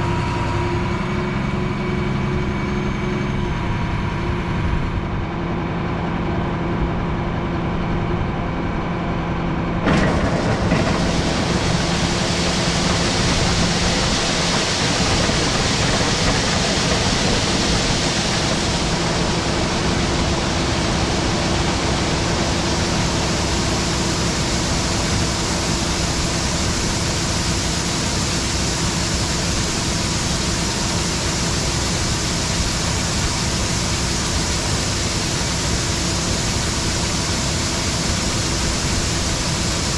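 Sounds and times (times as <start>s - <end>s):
tractor engine running: 9.7s - 39.9s
corn pouring from auger: 9.8s - 39.9s.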